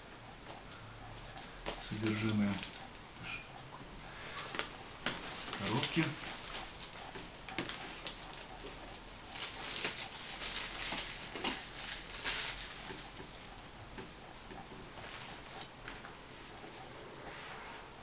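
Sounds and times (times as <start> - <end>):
packaging rustling and crinkling: 4.5 - 13.6.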